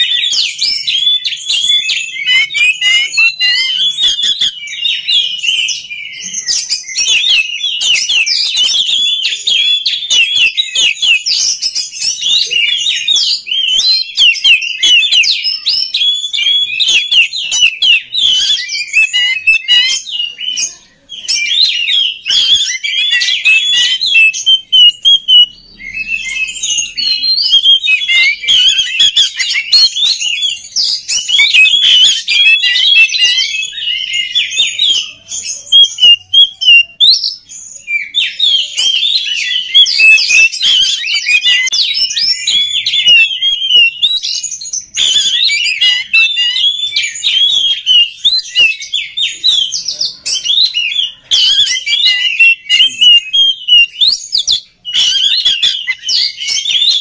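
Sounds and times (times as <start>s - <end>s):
songbird singing: 0.0s - 57.0s.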